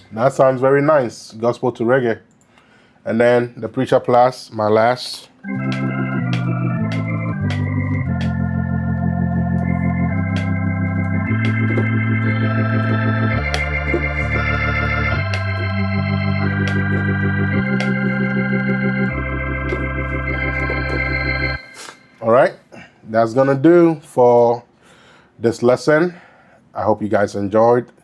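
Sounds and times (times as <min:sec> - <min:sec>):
gospel organ chords: 0:00.0 - 0:01.1, 0:04.8 - 0:22.5
deep bass line: 0:05.5 - 0:21.6.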